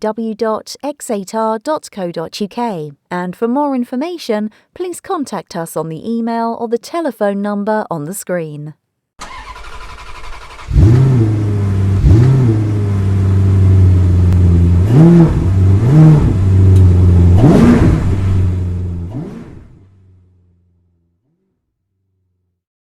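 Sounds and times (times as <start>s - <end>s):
car engine revving: 9.2s - 21.5s
steady low hum: 11.1s - 21.0s.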